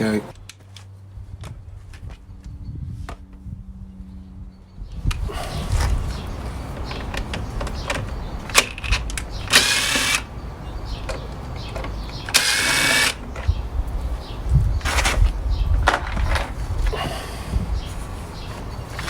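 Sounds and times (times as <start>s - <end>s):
small power tool whirring: 9.4s - 10.3s, 12.3s - 13.3s.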